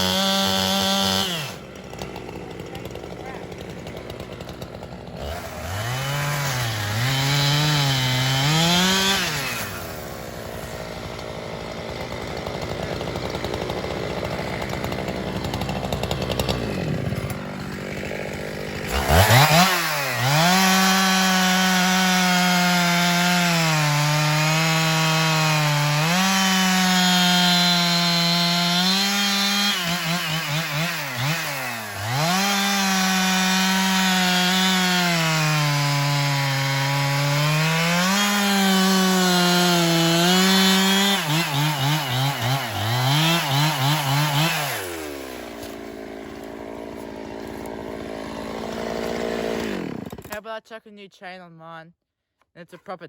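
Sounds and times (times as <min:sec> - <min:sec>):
chainsaw cutting logs: 0:00.0 - 0:50.7.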